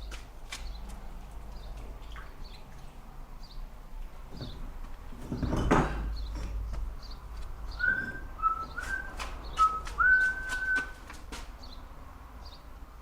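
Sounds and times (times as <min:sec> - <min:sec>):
person whistling: 0:07.8 - 0:11.0.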